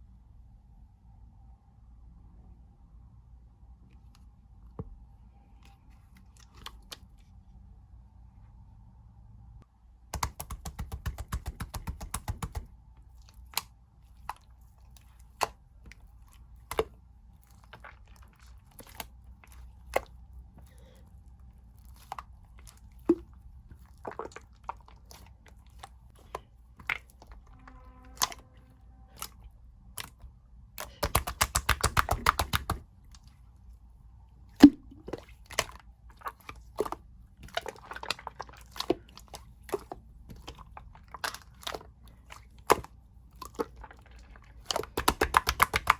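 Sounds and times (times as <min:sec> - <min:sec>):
slime wet clicks and pops: 0:30.8 - 0:32.8, 0:44.7 - 0:45.9.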